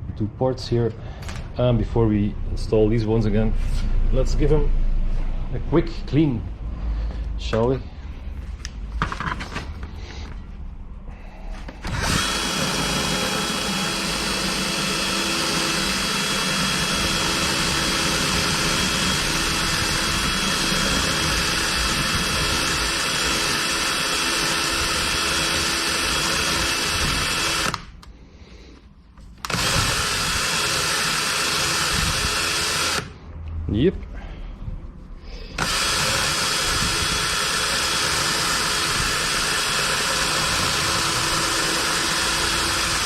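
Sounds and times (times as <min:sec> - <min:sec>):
electric power tool running: 0:11.6 - 0:28.0, 0:29.4 - 0:33.2, 0:35.6 - 0:43.0.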